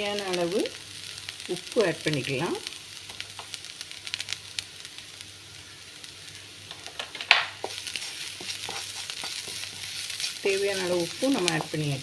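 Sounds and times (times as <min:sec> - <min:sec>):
vegetables frying in oil: 0:00.0 - 0:12.0
spoon scraping a pan: 0:06.8 - 0:12.0.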